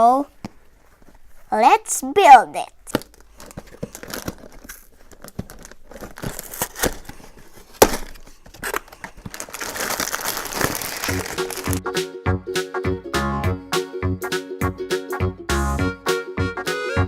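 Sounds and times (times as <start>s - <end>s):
packaging rustling and crinkling: 2.9s - 11.8s
plastic pieces clicking: 7.8s - 11.8s
background music with steady beat: 11.7s - 17.0s.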